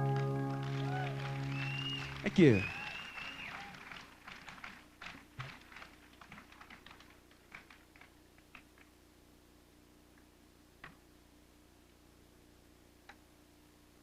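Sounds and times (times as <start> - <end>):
small audience clapping: 0.0 - 8.9.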